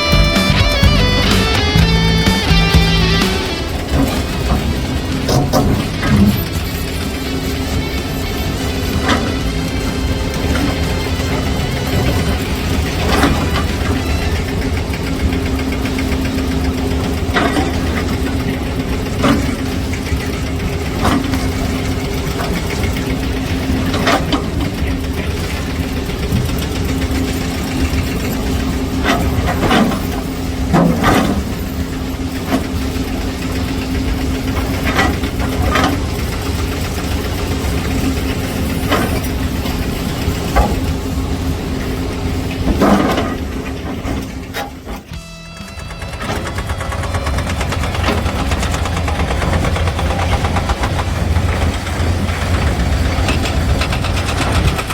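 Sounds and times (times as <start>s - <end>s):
excavator diesel engine running: 0.0s - 54.9s
steel bucket scraping rock: 3.3s - 45.2s.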